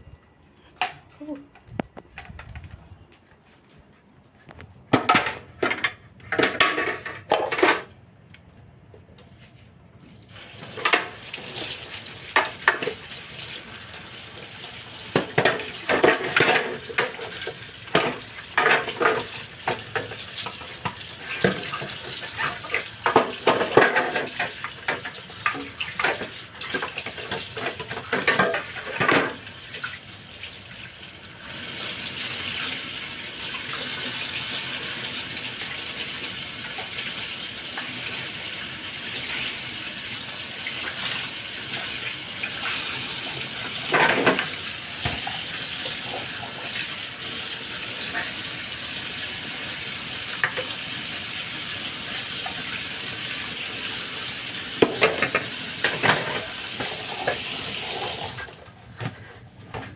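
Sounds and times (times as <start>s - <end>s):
dishes clattering in sink: 4.9s - 7.9s, 10.6s - 13.2s, 15.0s - 30.0s, 40.6s - 46.8s, 54.8s - 58.4s
tap water running into sink: 10.4s - 58.8s.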